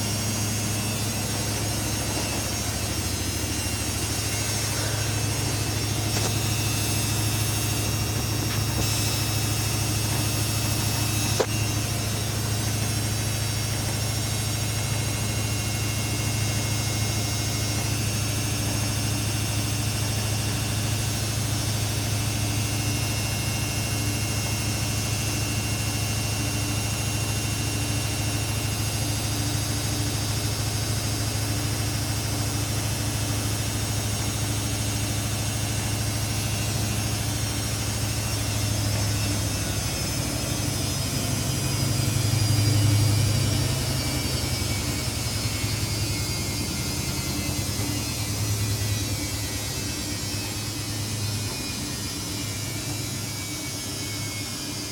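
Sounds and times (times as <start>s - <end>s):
washing machine running: 0.0s - 54.9s.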